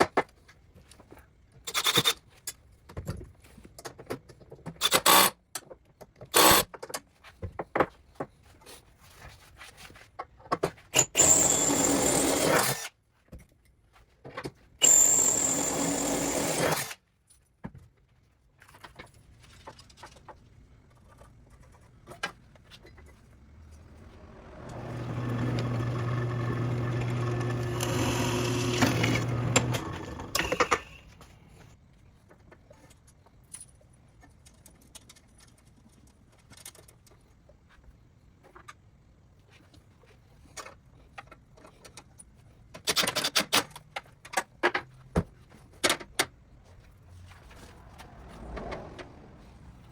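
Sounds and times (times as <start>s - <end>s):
power tool running: 11.0s - 12.8s, 14.8s - 17.0s, 23.8s - 31.1s.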